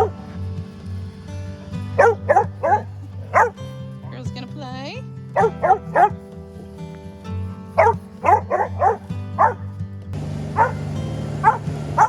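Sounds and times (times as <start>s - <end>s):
dog barking: 0.0s - 0.2s, 1.9s - 4.2s, 5.4s - 6.3s, 7.7s - 9.8s, 10.6s - 12.0s
background music: 0.0s - 12.0s.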